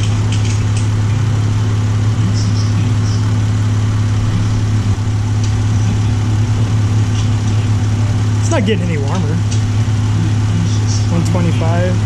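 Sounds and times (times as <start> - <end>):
van engine idling: 0.0 - 12.0.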